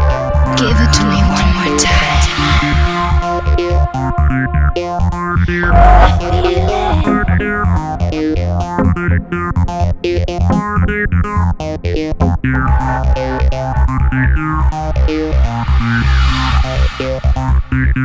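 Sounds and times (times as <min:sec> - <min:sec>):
pulsing bass line: 0:00.5 - 0:17.7
repeating synthesizer notes: 0:00.6 - 0:04.0, 0:05.4 - 0:07.8.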